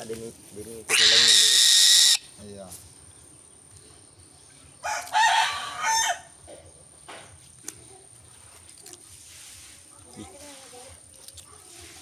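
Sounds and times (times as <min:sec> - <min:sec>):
rooster crowing: 0:04.8 - 0:06.3.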